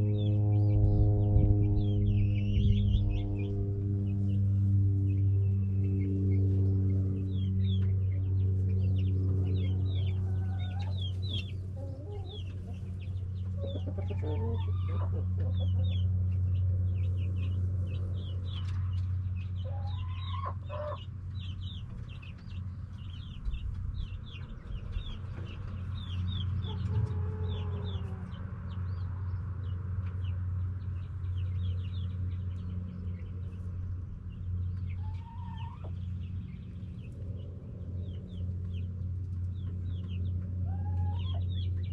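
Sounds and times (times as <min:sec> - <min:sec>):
steady low hum: 0:00.0 - 0:41.9
hens clucking: 0:09.6 - 0:16.1, 0:19.6 - 0:21.1, 0:25.1 - 0:28.3.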